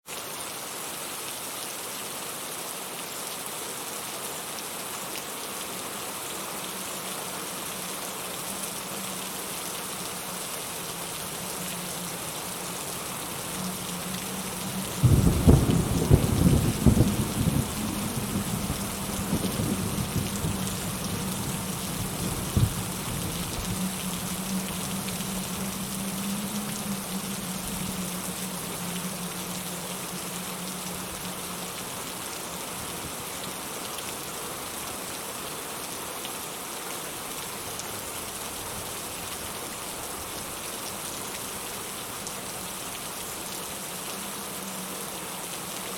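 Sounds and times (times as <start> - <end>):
heavy rain: 0.0 - 45.9
thunder rumbling: 12.8 - 30.2.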